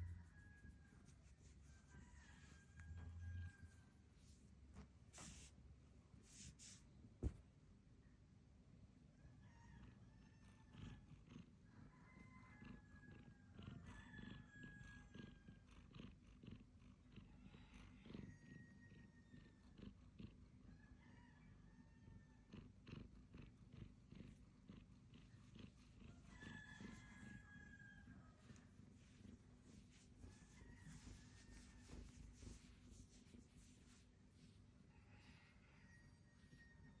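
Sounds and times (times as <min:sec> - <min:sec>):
cat purring: 0:10.7 - 0:12.0, 0:12.6 - 0:20.7, 0:22.2 - 0:34.9.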